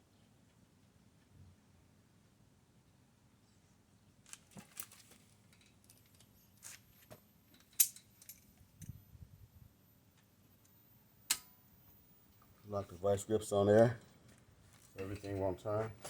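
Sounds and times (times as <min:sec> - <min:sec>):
metal tools clinking: 0:07.5 - 0:08.5.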